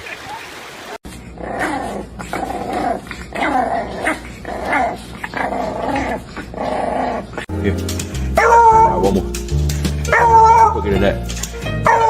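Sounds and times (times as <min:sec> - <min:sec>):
dog growling: 0:01.2 - 0:07.8.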